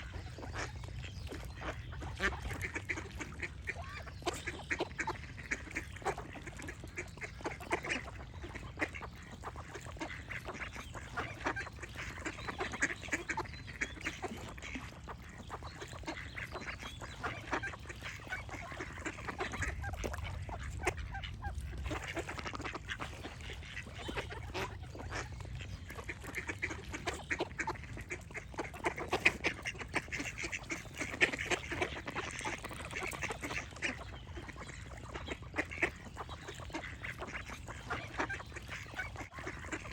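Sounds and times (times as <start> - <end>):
ducks quacking: 0.0 - 39.9.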